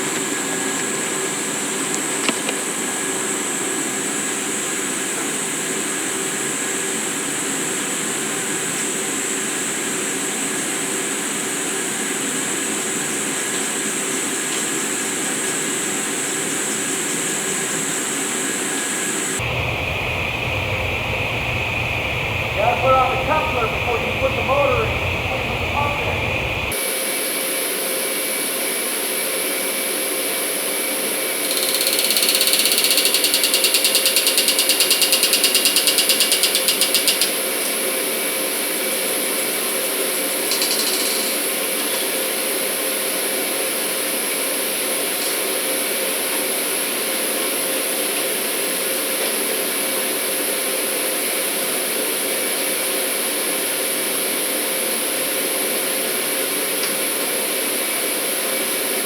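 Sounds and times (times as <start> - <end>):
industrial machinery hum: 19.4 - 26.8
rapid mechanical pulsing: 19.4 - 26.8.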